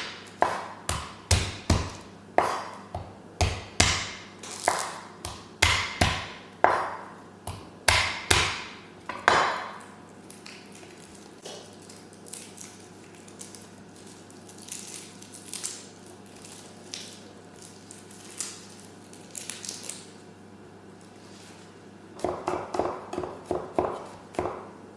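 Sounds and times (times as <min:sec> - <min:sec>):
knife chopping on cutting board: 0:00.0 - 0:09.8, 0:22.2 - 0:24.7.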